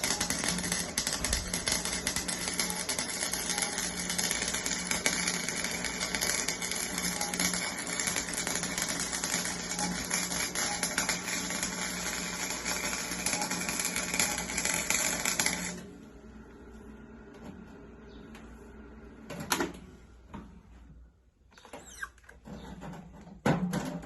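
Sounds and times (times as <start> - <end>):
arc welder crackling: 0.0 - 16.0.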